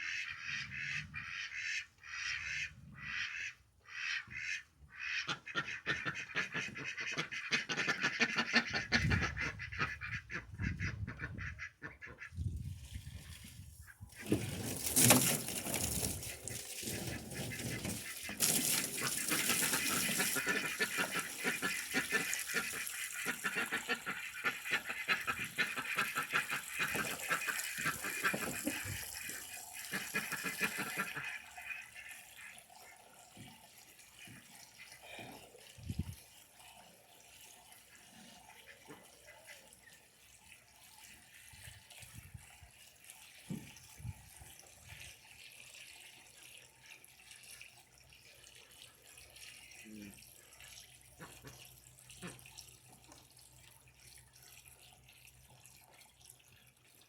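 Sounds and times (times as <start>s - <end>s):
water running and splashing: 12.5s - 57.0s.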